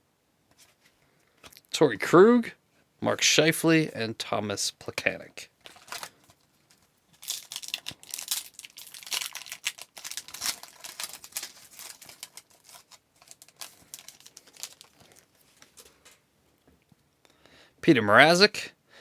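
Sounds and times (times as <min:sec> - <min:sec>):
foil wrapper tearing and crinkling: 0:05.7 - 0:16.2.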